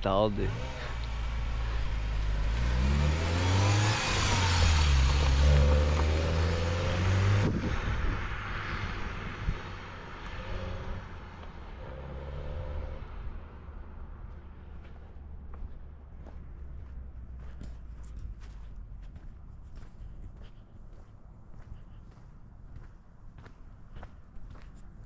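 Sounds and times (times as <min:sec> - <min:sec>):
car engine revving: 0:00.1 - 0:14.0.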